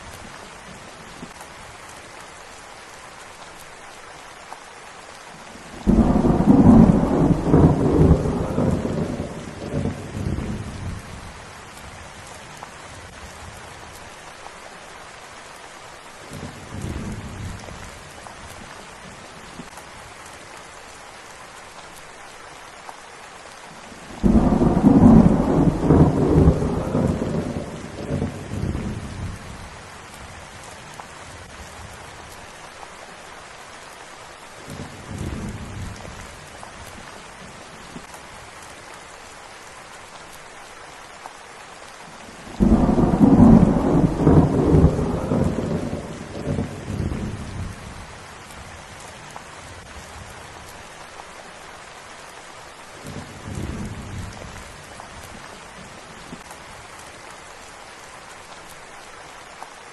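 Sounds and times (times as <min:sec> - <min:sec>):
steady rain hissing: 0:00.0 - 0:59.9
thunder rumbling: 0:05.7 - 0:11.4, 0:24.1 - 0:29.7, 0:42.4 - 0:48.1.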